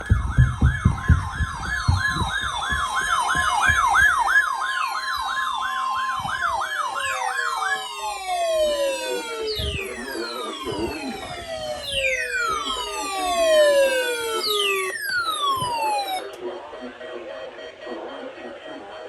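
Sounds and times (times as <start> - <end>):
low thumps: 0.0 - 5.3
falling gliding tones: 0.0 - 16.3
siren yelping: 0.0 - 16.4.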